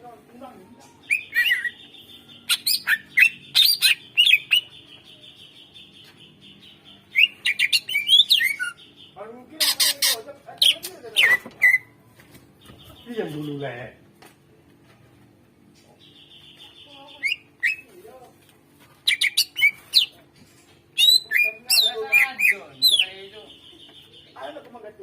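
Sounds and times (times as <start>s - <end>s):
harsh rasping bird calls: 0.8s - 12.0s, 19.0s - 20.2s, 21.0s - 24.6s.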